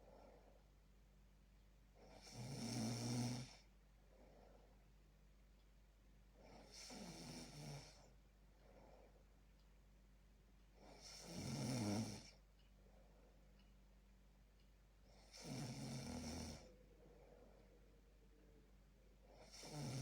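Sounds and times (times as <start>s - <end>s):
faint breaths: 0.0s - 0.9s, 3.4s - 5.2s, 6.3s - 9.8s, 15.0s - 20.0s
person snoring: 2.1s - 3.6s, 6.5s - 8.0s, 10.9s - 12.4s, 15.2s - 16.8s, 19.3s - 20.0s.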